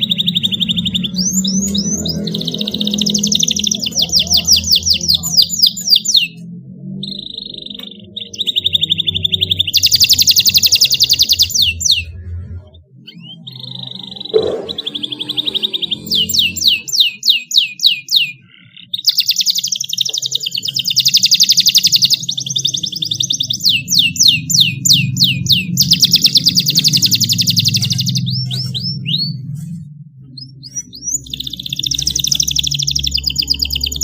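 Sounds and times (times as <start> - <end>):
canary singing trills: 0.0 - 34.0
low hum: 24.7 - 34.0.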